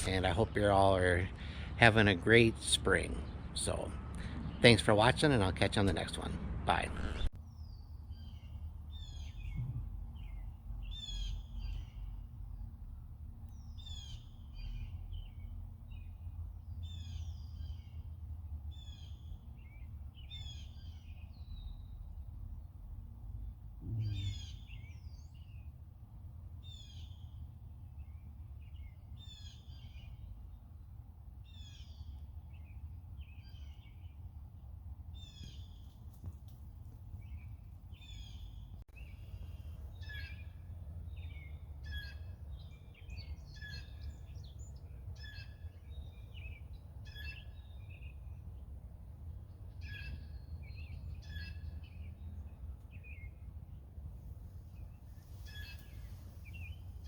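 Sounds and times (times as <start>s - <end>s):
songbirds singing: 0.0s - 25.9s, 26.5s - 36.1s, 37.0s - 57.0s
steady low rumble: 0.0s - 26.7s.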